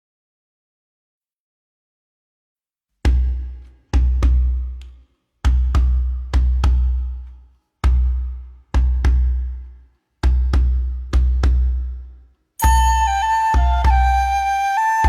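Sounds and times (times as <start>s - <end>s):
flute-like woodwind melody: 12.6s - 15.0s.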